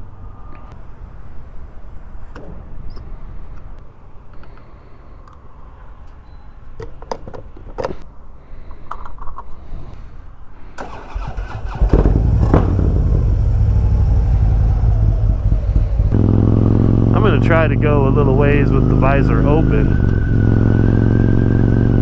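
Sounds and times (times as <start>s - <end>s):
motorcycle engine running: 10.8s - 22.0s.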